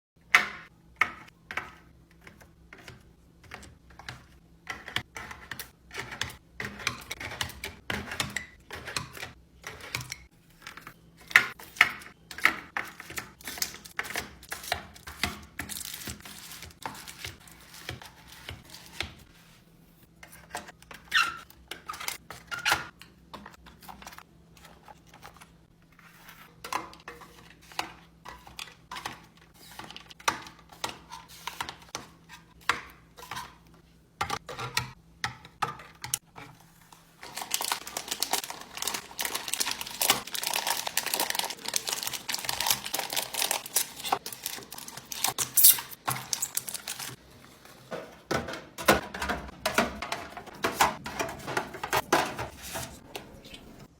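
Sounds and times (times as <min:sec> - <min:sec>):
plastic containers tapping and clicking: 0:34.2 - 0:36.6, 0:47.9 - 0:53.4.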